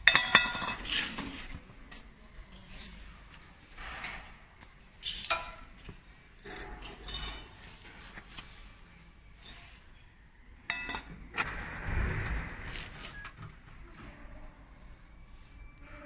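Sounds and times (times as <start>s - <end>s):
metal tools clinking and knocking: 0.0s - 1.4s, 5.0s - 5.8s, 6.4s - 8.3s, 10.7s - 11.5s.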